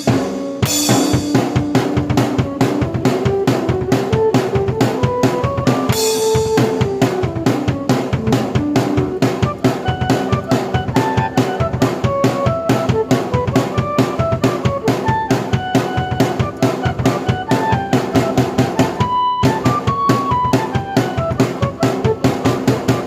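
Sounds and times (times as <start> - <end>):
drum kit beat: 0.0 - 23.0
keyboard melody: 0.0 - 23.0.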